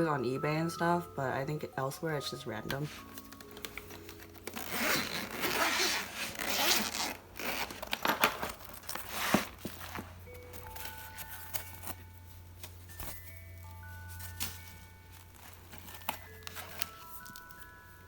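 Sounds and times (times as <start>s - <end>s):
zipper pulled open: 4.1s - 9.6s.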